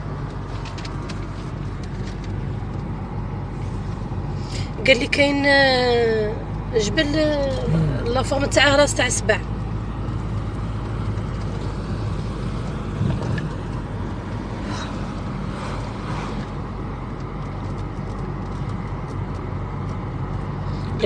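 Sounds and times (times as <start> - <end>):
car engine hum: 0.0 - 21.0
road noise: 0.0 - 21.0.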